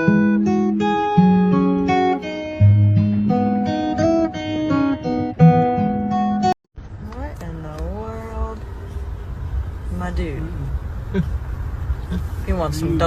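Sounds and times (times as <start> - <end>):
plucked acoustic guitar music: 0.0 - 6.6.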